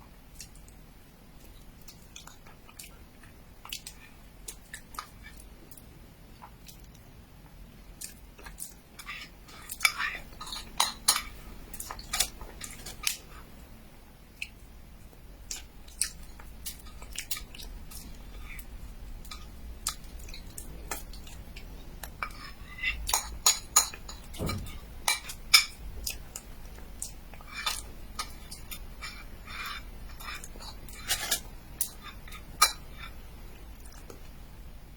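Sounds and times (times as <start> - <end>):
chewing: 1.4 - 13.5, 15.4 - 34.3
cutlery clinking against dish: 23.1 - 25.8, 30.2 - 31.5.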